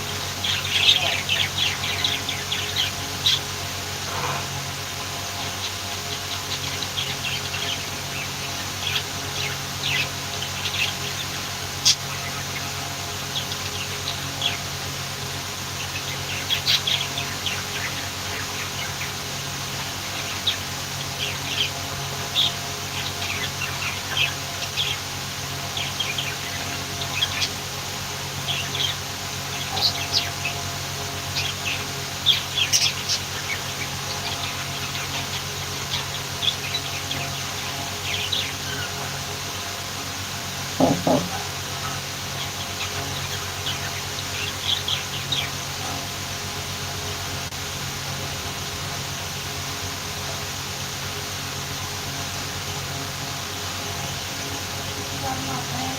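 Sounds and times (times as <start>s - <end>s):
budgerigars chirping: 0.0s - 3.5s, 15.8s - 19.1s, 28.4s - 30.6s, 31.4s - 39.3s, 40.8s - 46.0s
steady low hum: 0.0s - 55.9s.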